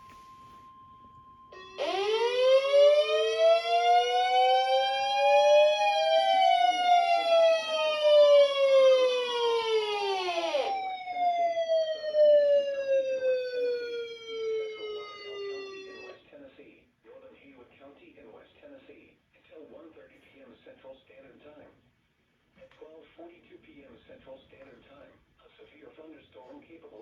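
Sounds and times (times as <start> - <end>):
siren wailing: 0.0 - 16.2.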